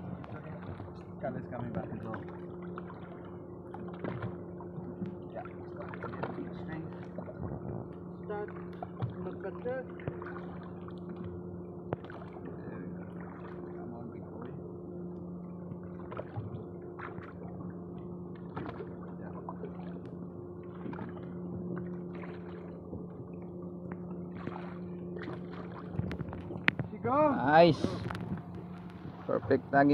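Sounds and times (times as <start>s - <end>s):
boat engine idling: 0.0s - 29.9s
water sloshing and splashing: 0.0s - 29.9s.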